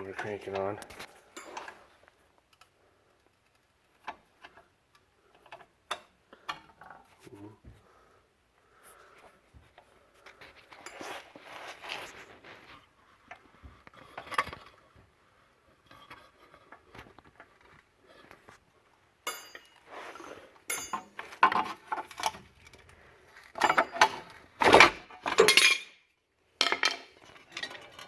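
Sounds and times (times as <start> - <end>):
steel clanking and clinking: 1.3 - 1.8, 19.3 - 19.9, 20.7 - 22.4, 23.6 - 26.0.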